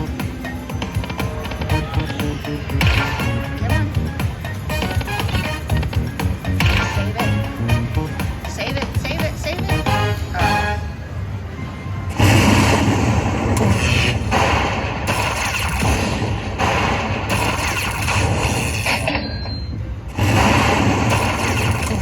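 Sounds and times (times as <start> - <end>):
slot machine sounds: 0.0 - 11.0.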